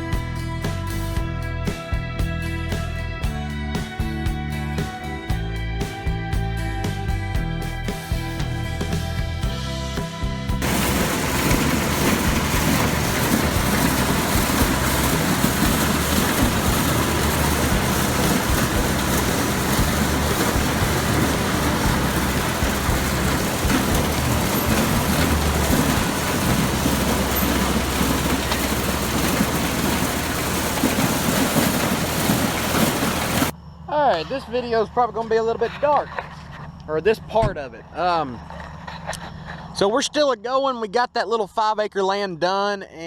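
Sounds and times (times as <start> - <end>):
tractor engine rumble: 10.6 - 39.8.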